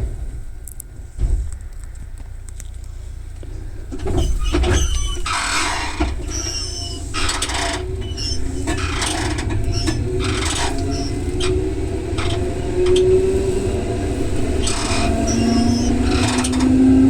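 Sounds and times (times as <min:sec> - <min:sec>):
train wheels rumbling on track: 0:00.0 - 0:17.0
high-pitched wheel squeals: 0:04.0 - 0:17.0.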